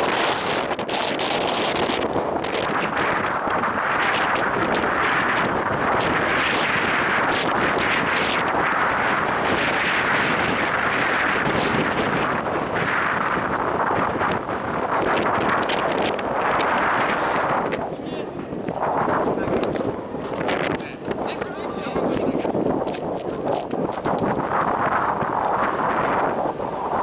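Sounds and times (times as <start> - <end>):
wind buffeting microphone: 0.0 - 27.0.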